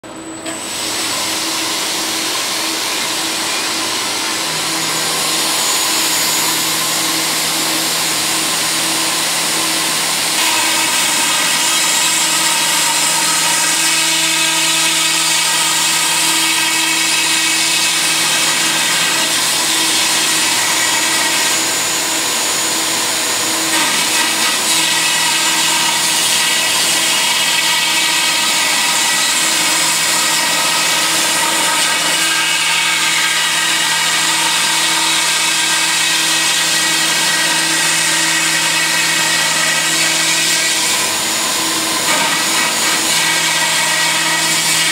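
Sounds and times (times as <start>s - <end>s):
cutting noise: 35.4s - 44.9s.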